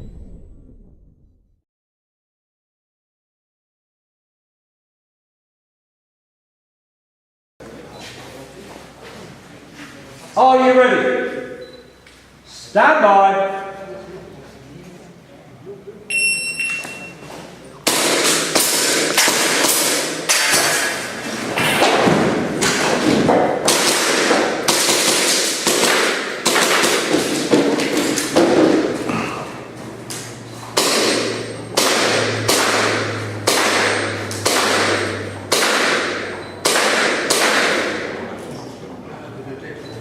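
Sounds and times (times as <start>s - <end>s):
low hum: 0.0s - 1.6s, 28.8s - 36.6s
shot timer beep: 11.6s - 12.0s, 16.1s - 17.2s
gas pistol shots: 17.8s - 21.2s, 23.6s - 27.5s, 30.8s - 38.2s
pellets hitting targets: 17.8s - 29.4s, 30.1s - 38.3s.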